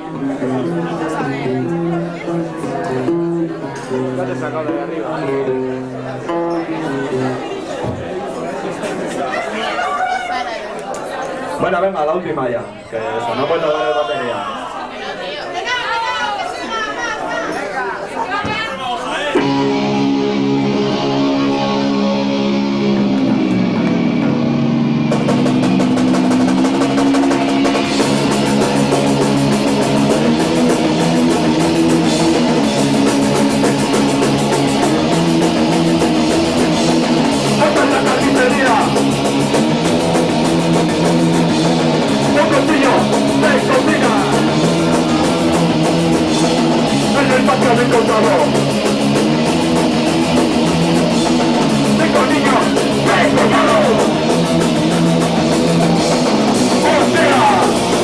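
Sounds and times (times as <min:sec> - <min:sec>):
punk rock band playing live: 0:19.4 - 0:58.0.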